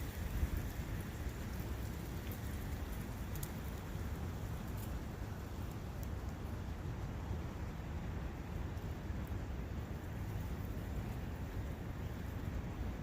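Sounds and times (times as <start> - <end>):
wind noise with low rumble: 0.0 - 13.0
faint high ticks: 2.0 - 3.9.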